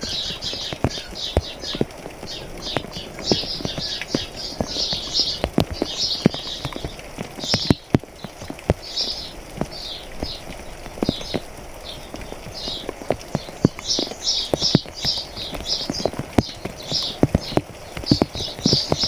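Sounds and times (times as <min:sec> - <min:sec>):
birds chirping: 0:00.0 - 0:19.0
faint hiss of rain: 0:00.0 - 0:19.0
rain drops tapping on hard surface: 0:00.0 - 0:19.0.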